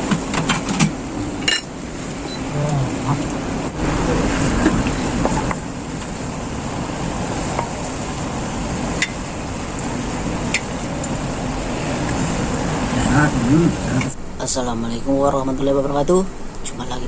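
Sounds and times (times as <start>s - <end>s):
food cooking in a pan: 5.0s - 12.9s.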